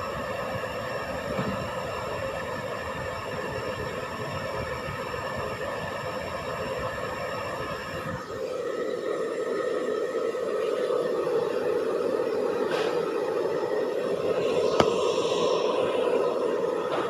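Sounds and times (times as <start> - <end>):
hair dryer running: 8.1 - 17.0.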